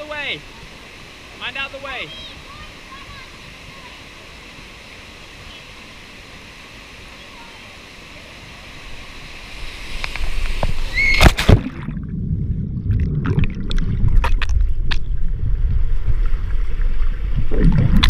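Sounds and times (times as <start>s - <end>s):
waterfall running: 0.0s - 11.8s
muffled sloshing and gurgling water: 9.0s - 18.0s
water splash: 9.4s - 18.0s.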